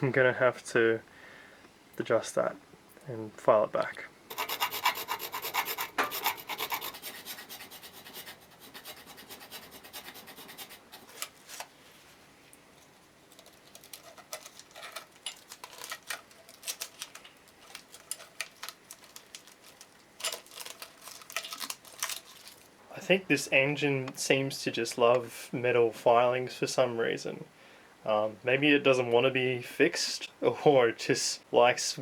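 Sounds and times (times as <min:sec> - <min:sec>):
hand file rasping on steel: 0:04.3 - 0:11.3.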